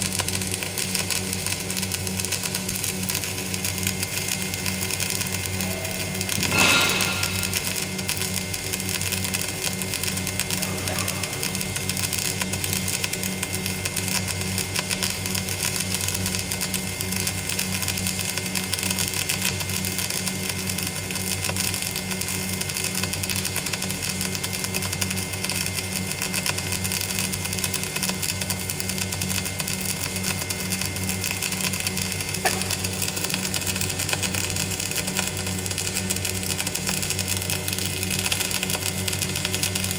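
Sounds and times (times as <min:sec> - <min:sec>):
arc welding crackling hiss: 0:00.0 - 0:39.9
low hum: 0:05.4 - 0:08.5.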